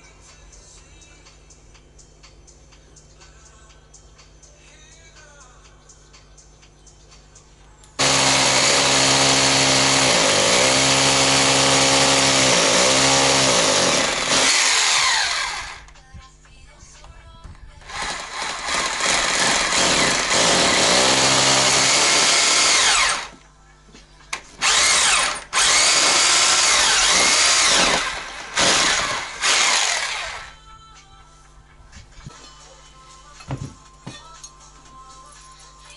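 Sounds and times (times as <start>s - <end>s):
power tool running: 8.0s - 15.9s, 17.9s - 23.4s, 24.6s - 30.6s.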